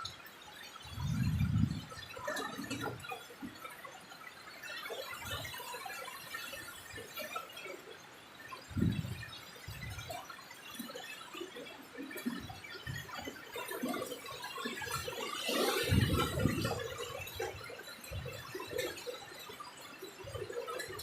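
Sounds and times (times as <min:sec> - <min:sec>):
strong gusting wind: 0:00.9 - 0:02.0, 0:08.7 - 0:10.0, 0:15.9 - 0:16.9.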